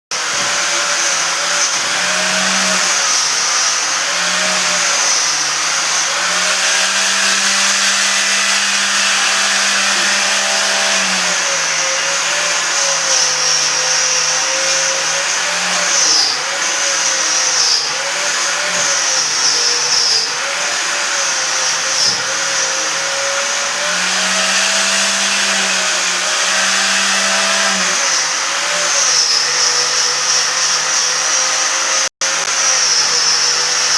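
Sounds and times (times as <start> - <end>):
electric power tool motor: 0.2 - 33.9.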